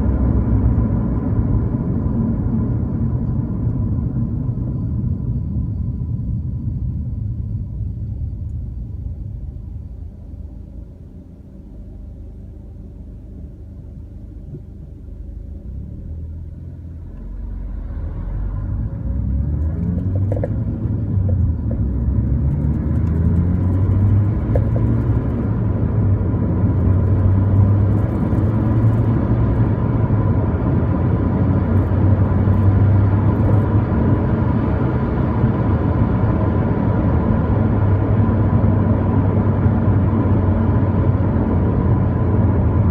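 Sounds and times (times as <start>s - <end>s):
car engine accelerating: 13.9s - 42.9s.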